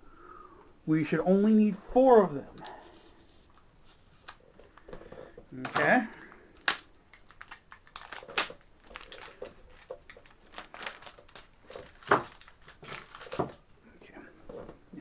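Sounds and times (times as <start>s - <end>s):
light crinkling: 2.3s - 5.5s, 6.1s - 14.8s.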